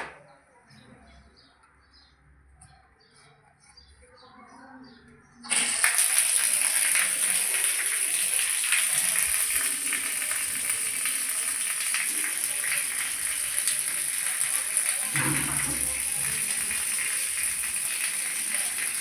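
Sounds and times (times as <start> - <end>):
water running from tap: 5.5 - 19.0.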